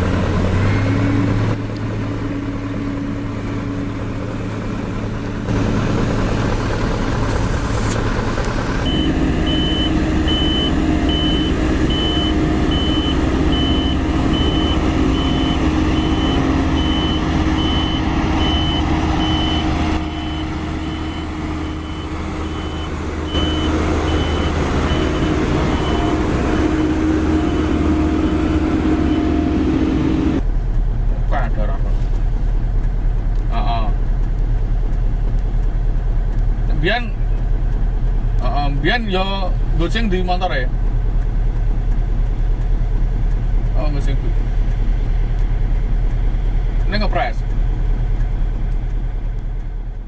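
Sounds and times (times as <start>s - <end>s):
diesel engine running: 0.0s - 50.0s
reversing alarm beeping: 8.9s - 30.4s.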